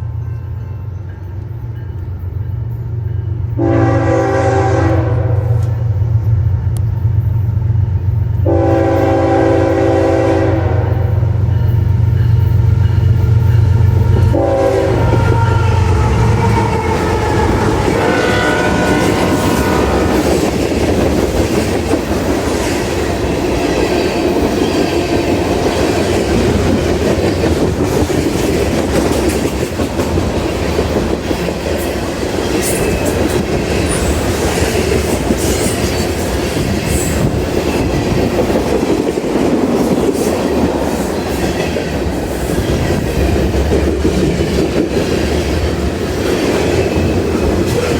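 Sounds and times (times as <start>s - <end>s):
diesel locomotive drone: 0.0s - 47.9s
freight cars rumbling on rails: 0.0s - 47.9s
train air horn: 3.6s - 6.0s, 8.4s - 11.4s, 14.2s - 20.4s.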